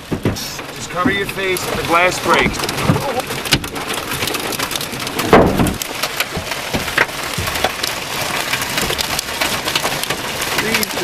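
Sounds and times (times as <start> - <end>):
hailstones pounding car: 0.0 - 11.0.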